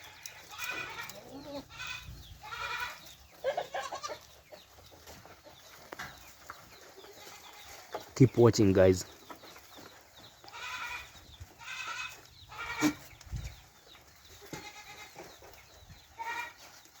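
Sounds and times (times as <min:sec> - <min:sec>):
goats bleating: 0:00.0 - 0:04.3, 0:10.5 - 0:13.1, 0:14.4 - 0:15.2, 0:16.2 - 0:16.6.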